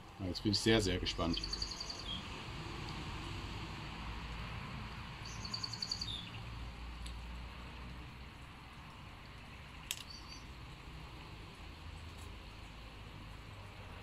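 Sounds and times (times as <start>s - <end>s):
outdoor background noise: 0.0s - 14.0s
bird chirping: 1.1s - 2.3s, 5.2s - 6.4s, 10.0s - 10.5s.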